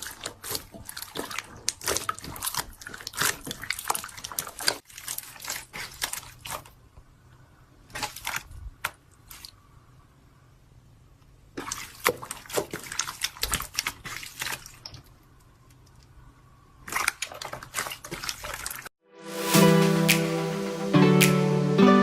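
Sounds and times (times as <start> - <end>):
slime squishing: 0.0 - 6.9, 7.8 - 9.6, 11.5 - 16.0, 16.8 - 18.9
music: 19.0 - 22.0.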